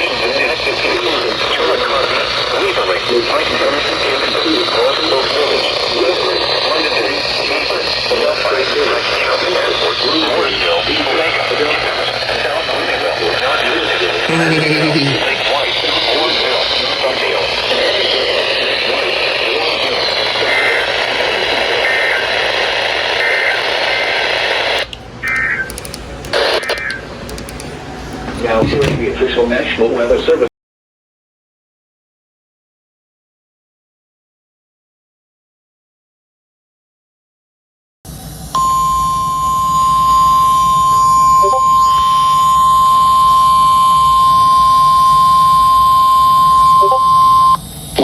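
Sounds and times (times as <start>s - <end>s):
radio static hiss: 15.3s - 24.9s, 26.3s - 27.0s
steady warning alarm tone: 38.6s - 47.6s.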